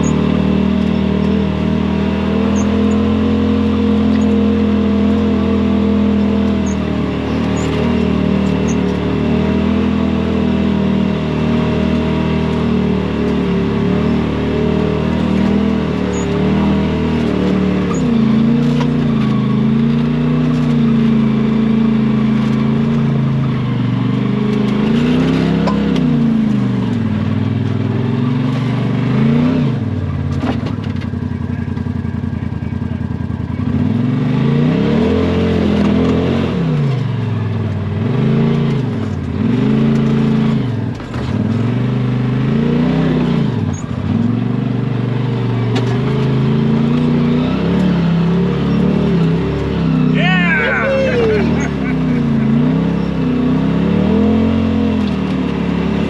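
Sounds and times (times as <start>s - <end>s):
engine revving: 0.0s - 56.0s
utility vehicle engine running: 0.0s - 56.0s.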